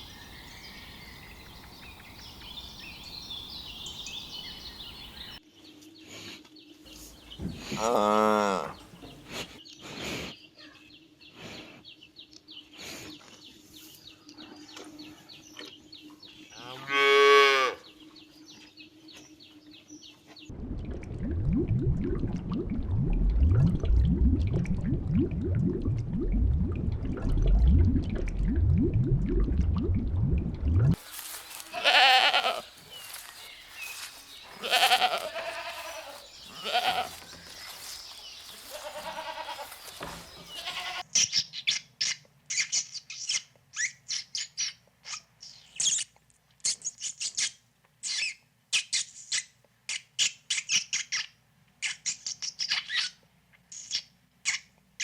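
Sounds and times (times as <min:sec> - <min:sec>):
small birds chirping: 0:00.0 - 0:07.9, 0:31.0 - 0:46.1
low rumbling with rising sweeps: 0:20.5 - 0:31.0
goats or sheep bleating: 0:31.5 - 0:33.2, 0:34.5 - 0:37.3, 0:38.5 - 0:41.1.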